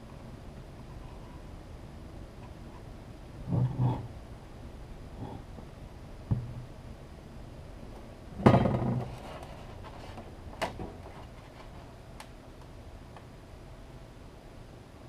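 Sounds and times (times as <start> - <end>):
parts knocking on hard surface: 8.4 - 9.1
parts clattering: 8.4 - 11.8.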